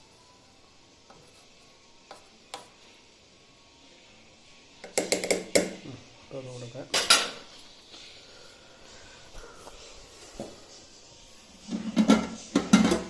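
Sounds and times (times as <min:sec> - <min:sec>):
utensils clinking against pots: 0:06.9 - 0:07.6, 0:11.7 - 0:13.0.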